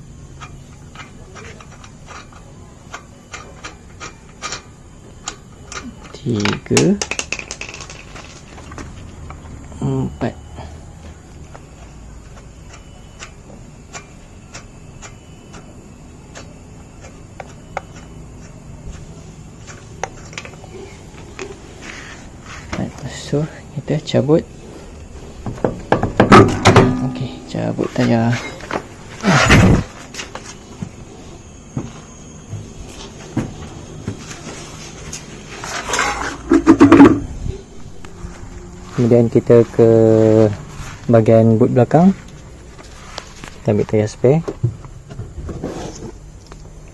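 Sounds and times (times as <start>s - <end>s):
wheel knocks and clunks: 25.4s - 31.0s.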